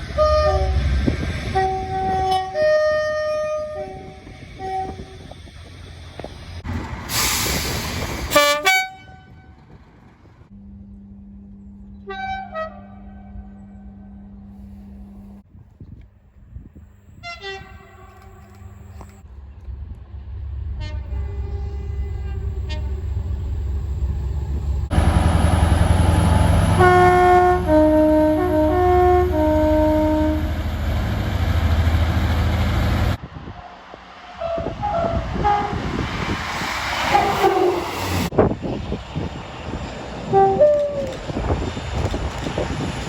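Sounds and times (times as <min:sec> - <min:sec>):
passing train rumble: 0:00.0 - 0:15.6, 0:16.2 - 0:43.0
train horn blasts: 0:00.1 - 0:05.4, 0:08.3 - 0:09.7, 0:10.6 - 0:15.4, 0:17.2 - 0:19.2, 0:20.8 - 0:23.2, 0:26.0 - 0:30.7, 0:34.4 - 0:36.3, 0:37.0 - 0:38.3, 0:40.3 - 0:41.2.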